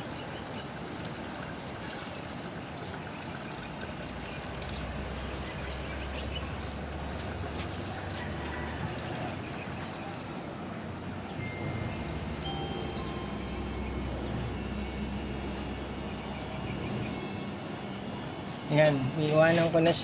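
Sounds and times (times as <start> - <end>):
washing machine filling with water: 0.0 - 20.0
low hum: 10.3 - 19.3.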